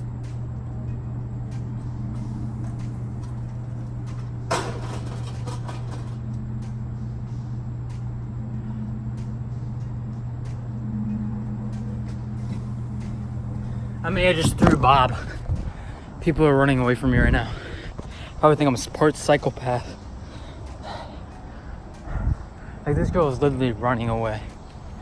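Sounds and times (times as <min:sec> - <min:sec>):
steady low hum: 0:00.0 - 0:25.0
rattling: 0:02.2 - 0:06.4
microwave crashing to ground: 0:04.5 - 0:06.2.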